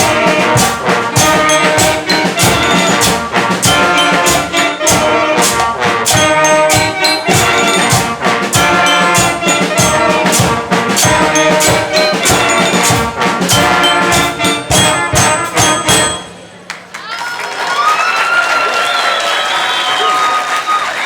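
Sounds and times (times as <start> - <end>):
drum and cymbal strikes: 0.0 - 16.6
school band brass: 0.0 - 17.2.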